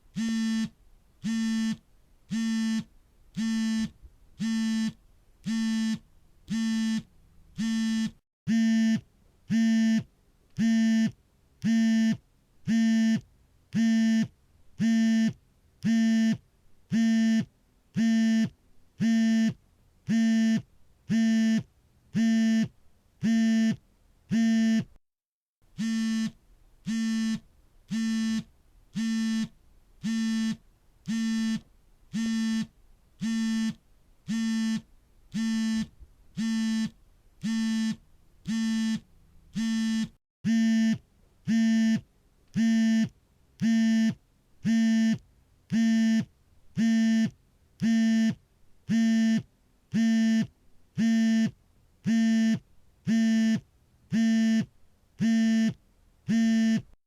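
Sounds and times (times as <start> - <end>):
phone vibration buzzing: 0.1 - 10.0, 25.8 - 42.0, 50.0 - 53.6, 54.2 - 56.9.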